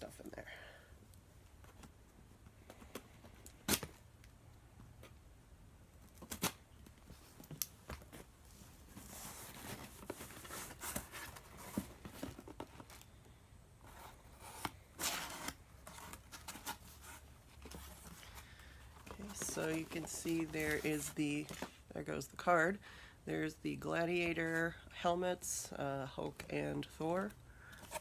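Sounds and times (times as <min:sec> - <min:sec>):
cardboard tearing and rustling: 0:08.8 - 0:13.0, 0:13.9 - 0:21.8.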